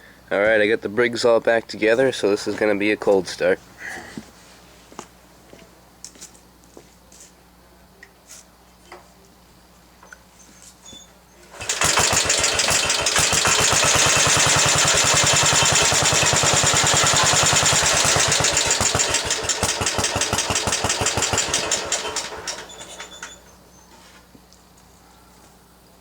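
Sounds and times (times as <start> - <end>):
single-cylinder engine running: 11.5 - 23.4.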